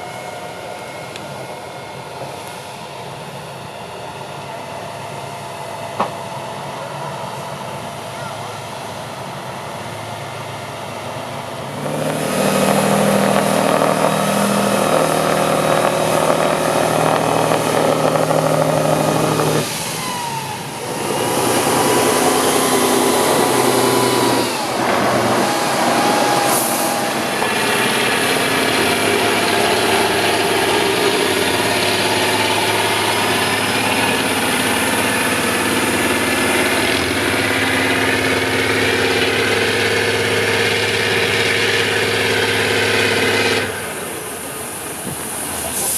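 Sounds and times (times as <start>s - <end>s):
diesel truck engine revving: 4.6s - 45.9s
whine gliding in pitch: 12.3s - 44.4s.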